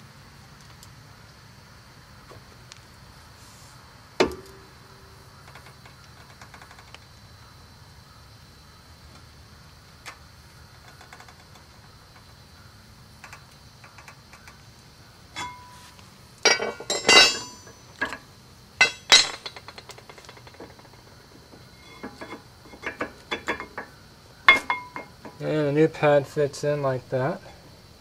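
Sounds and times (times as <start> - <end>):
metal clinks of tools on brake: 15.4 - 18.2, 18.8 - 25.4.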